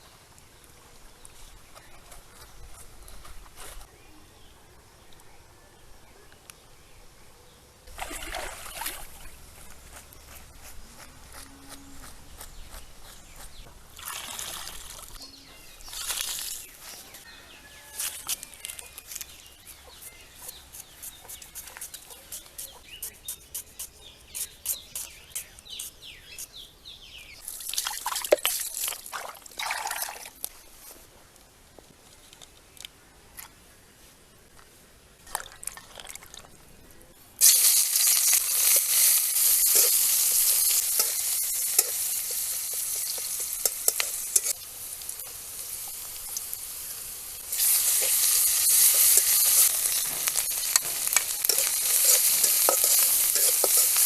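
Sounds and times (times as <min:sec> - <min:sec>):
water trickling and pouring: 0:27.5 - 0:30.4
food frying in hot oil: 0:37.4 - 0:54.0.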